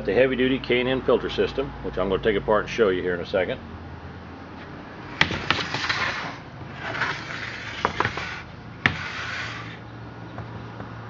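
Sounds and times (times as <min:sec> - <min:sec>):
rustling scrapes: 0:05.1 - 0:09.8.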